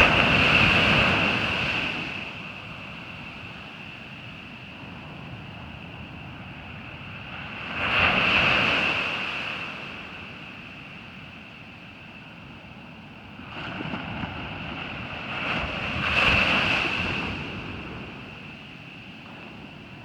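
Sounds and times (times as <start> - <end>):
surf breaking on beach: 0.0 - 3.9, 13.4 - 20.0.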